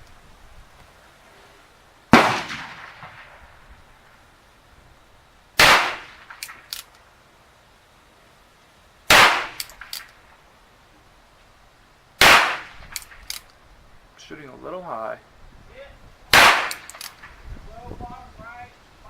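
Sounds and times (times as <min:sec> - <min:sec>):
revolver hammer cocking clicks: 0:06.3 - 0:07.0, 0:09.5 - 0:10.2, 0:12.9 - 0:13.6, 0:16.6 - 0:17.3.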